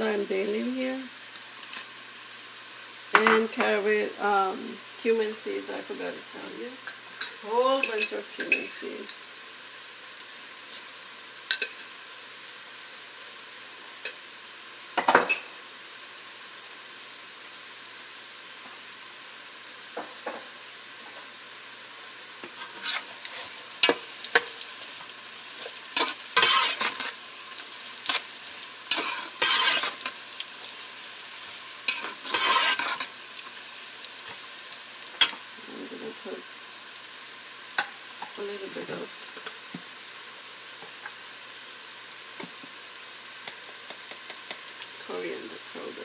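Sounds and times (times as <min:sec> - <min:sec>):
onions sizzling in oil: 0:00.0 - 0:46.0
spoon scraping a pot: 0:22.4 - 0:24.6, 0:25.6 - 0:27.2, 0:28.9 - 0:30.2, 0:31.8 - 0:33.1.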